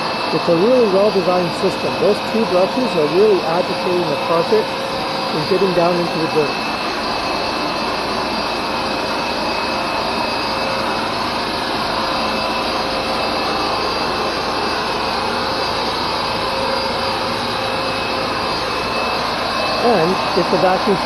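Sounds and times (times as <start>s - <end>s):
carpet cleaner running: 0.0s - 21.0s.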